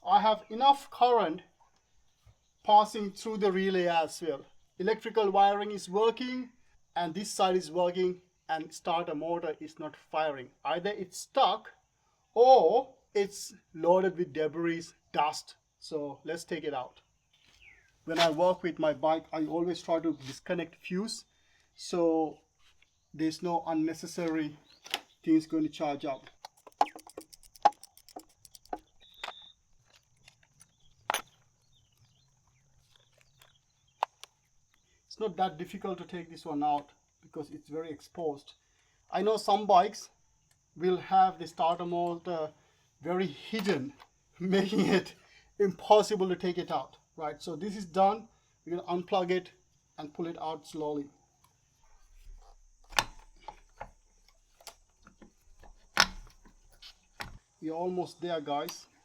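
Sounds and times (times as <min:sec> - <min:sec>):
hands and tools clicking on parts: 0:26.3 - 0:34.8, 0:52.1 - 0:57.4.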